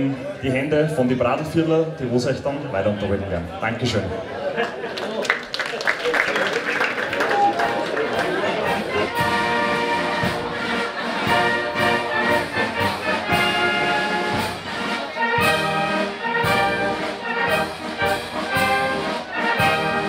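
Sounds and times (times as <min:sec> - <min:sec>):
brass band playing a march: 0:08.1 - 0:20.0.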